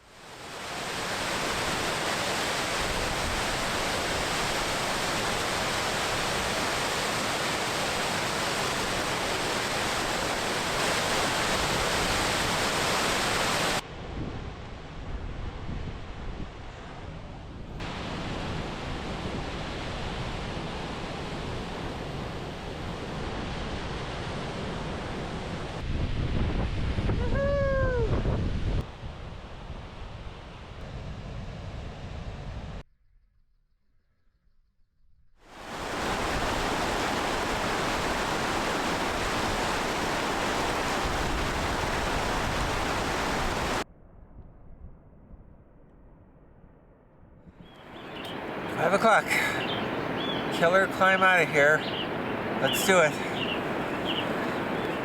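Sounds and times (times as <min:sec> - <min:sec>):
water rushing: 0:00.0 - 0:13.8, 0:17.8 - 0:25.9, 0:35.5 - 0:43.8, 0:47.8 - 0:55.0.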